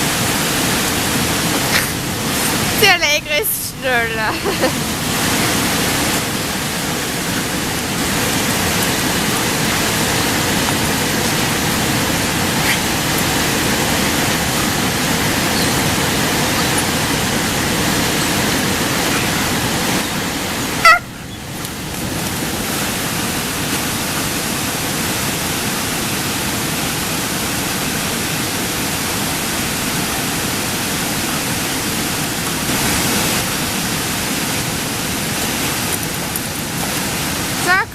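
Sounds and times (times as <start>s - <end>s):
waterfall roaring: 0.0s - 37.9s.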